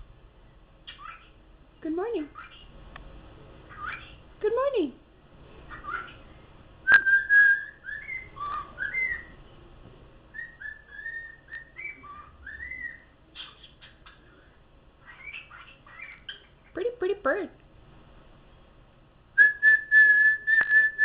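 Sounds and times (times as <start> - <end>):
cockatiel chirps: 0.8 - 1.4, 3.7 - 4.2, 5.7 - 6.2, 7.0 - 9.4, 10.3 - 14.4, 15.0 - 16.6
cockatiel whistling: 6.8 - 9.4, 10.3 - 14.2, 15.0 - 16.5, 19.4 - 21.0.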